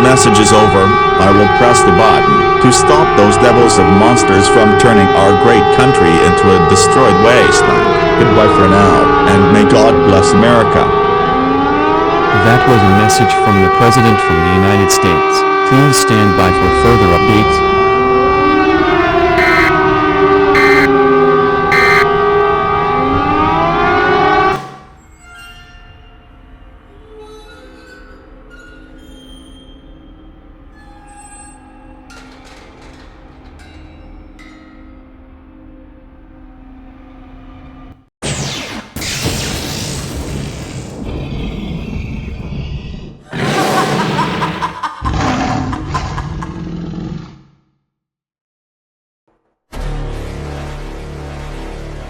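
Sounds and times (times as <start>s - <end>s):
faint tones: 0.0s - 23.6s
loud low rumbling: 0.0s - 25.0s
sirens wailing: 0.0s - 25.0s, 26.1s - 38.0s.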